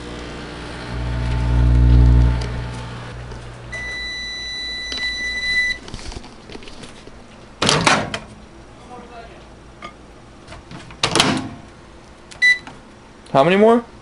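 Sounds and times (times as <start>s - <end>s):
microwave oven humming: 0.0s - 5.9s
high microwave beep: 0.9s - 5.8s, 12.4s - 12.7s.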